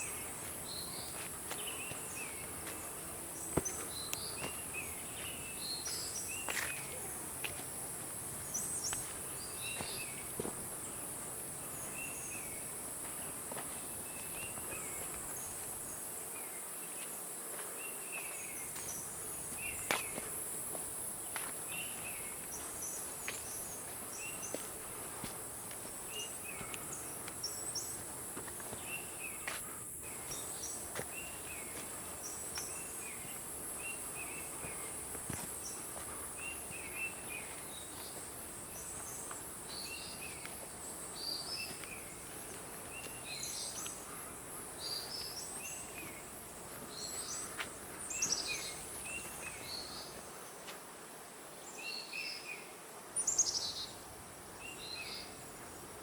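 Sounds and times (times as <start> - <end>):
insects droning: 0.0 - 56.0
light footstep clicks: 0.4 - 7.8, 19.5 - 33.4.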